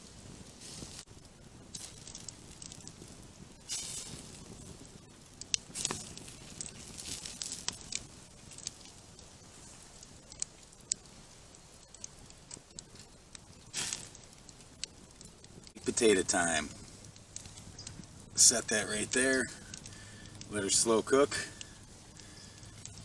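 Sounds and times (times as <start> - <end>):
campfire crackling and popping: 0.0 - 23.0
low steady hiss: 0.0 - 23.0.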